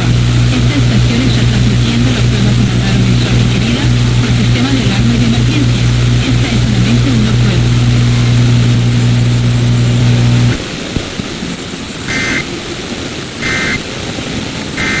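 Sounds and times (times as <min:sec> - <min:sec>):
loud low hum: 0:00.0 - 0:15.0
short high electronic beeps: 0:12.1 - 0:12.5, 0:13.4 - 0:13.8, 0:14.8 - 0:15.0.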